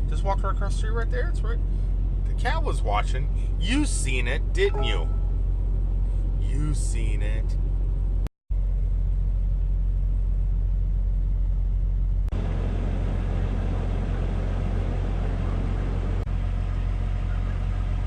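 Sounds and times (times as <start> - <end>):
vehicle engine and road rumble: 0.0 - 18.0.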